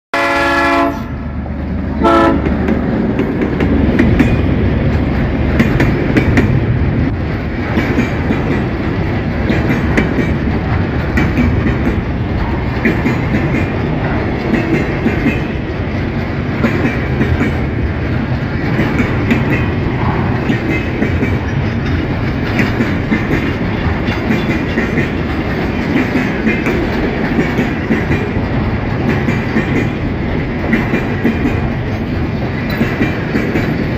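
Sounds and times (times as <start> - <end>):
locomotive horn blast: 0.1 - 1.2, 2.0 - 2.5
locomotive engine rumble: 0.2 - 33.9
wheels clacking over rail joints: 1.4 - 33.9.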